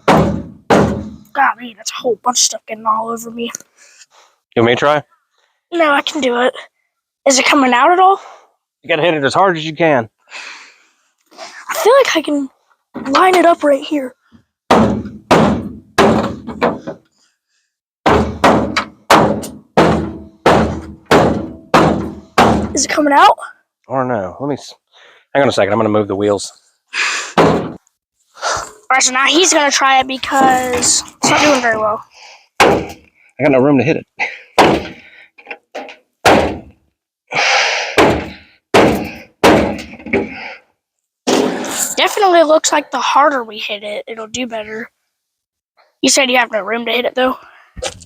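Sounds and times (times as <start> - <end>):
hammer thunks on sheet metal: 0.0 - 1.3, 14.7 - 17.0, 18.0 - 22.7, 27.4 - 27.8, 32.6 - 33.0, 34.6 - 35.0, 35.8 - 36.7, 38.0 - 40.4.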